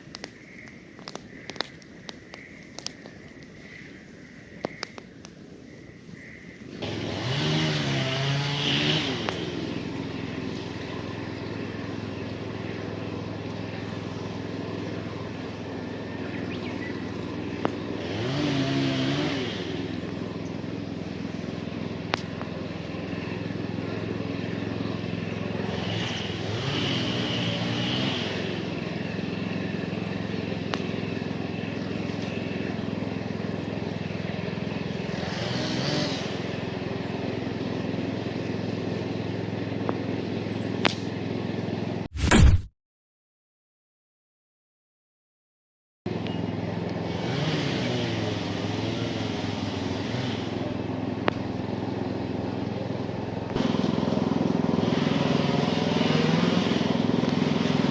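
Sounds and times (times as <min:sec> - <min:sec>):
engine hum: 0:00.0 - 0:42.7, 0:46.1 - 0:57.9
sharp pops: 0:00.1 - 0:03.0, 0:42.1 - 0:42.7.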